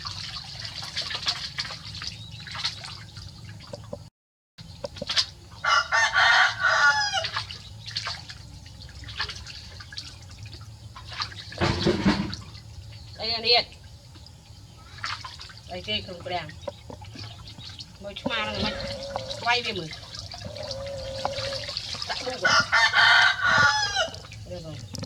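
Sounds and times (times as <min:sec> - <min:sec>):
water dripping: 0:00.0 - 0:04.0, 0:04.7 - 0:25.0
rooster crowing: 0:05.6 - 0:07.4, 0:18.3 - 0:24.3.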